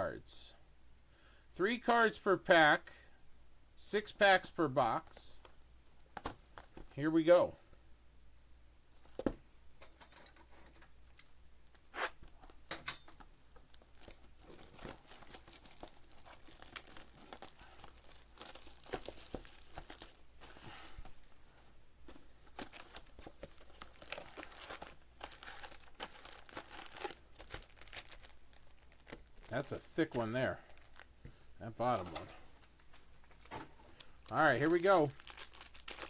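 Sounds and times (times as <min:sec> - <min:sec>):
wrapping crinkling and tearing: 0:13.6 - 0:21.3, 0:22.4 - 0:31.1, 0:32.8 - 0:36.0.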